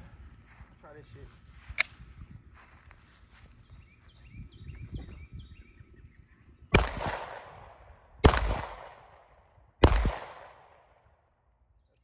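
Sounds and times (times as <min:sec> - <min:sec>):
gunshots with echo: 0:06.7 - 0:11.0.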